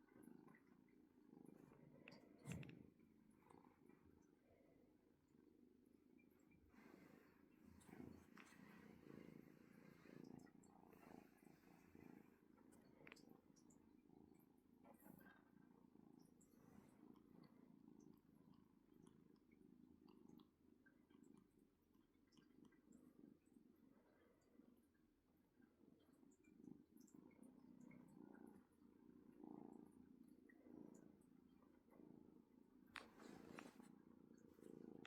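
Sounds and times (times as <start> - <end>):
kitten purring: 0.0 - 35.0.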